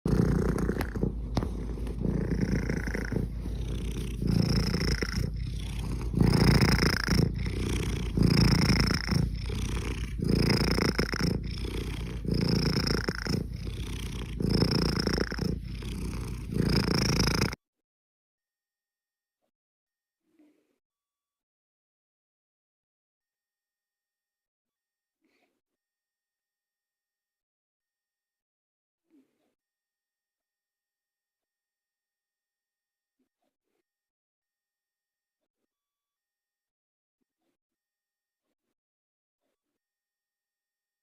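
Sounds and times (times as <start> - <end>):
cat snoring: 0.1 - 17.6.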